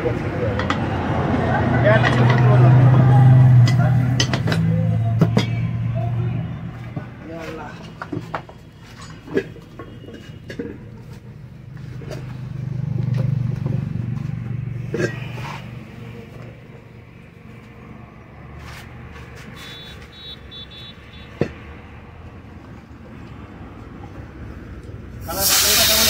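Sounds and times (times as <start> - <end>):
vehicle passing rumble: 0.0 - 9.9, 10.6 - 25.4
high beeps: 19.6 - 21.3.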